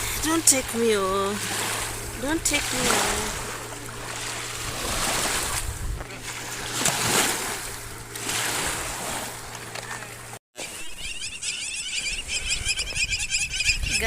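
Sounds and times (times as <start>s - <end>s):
lake waves splashing at shore: 0.0s - 10.9s
steady low hum: 0.0s - 14.0s.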